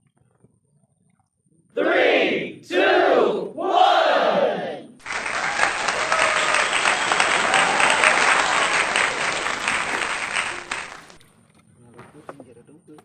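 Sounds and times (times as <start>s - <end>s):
crowd applauding: 5.0s - 11.2s.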